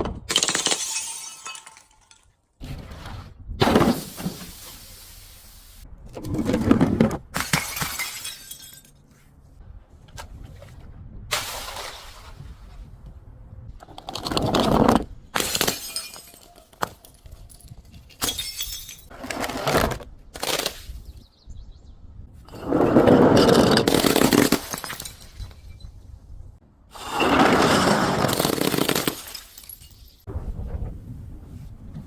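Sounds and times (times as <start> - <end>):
glass shattering: 0.3 - 2.3, 7.4 - 9.0, 15.4 - 19.1, 23.8 - 25.9, 28.2 - 30.3
glass crunching: 0.3 - 2.4, 7.4 - 9.0, 15.4 - 19.1, 23.6 - 25.8, 28.2 - 30.3.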